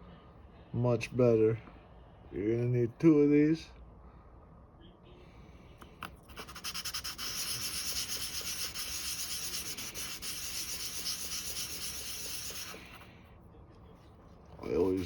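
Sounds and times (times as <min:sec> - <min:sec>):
sandpaper rubbing on metal part: 0:06.3 - 0:13.0.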